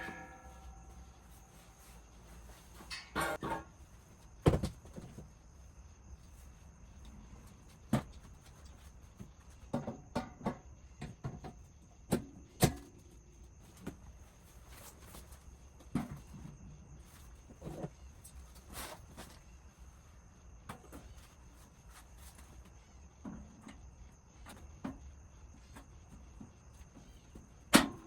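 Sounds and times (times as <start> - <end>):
metal rack bars knocking and clanking: 0.0 - 1.0.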